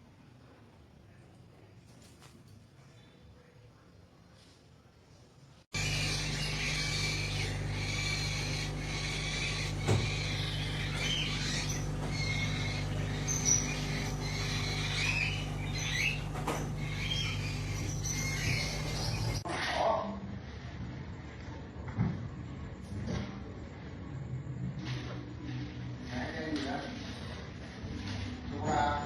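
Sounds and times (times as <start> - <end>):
low electrical hum: 0.0 - 19.4
parrot chirping and squeaking: 5.8 - 19.4.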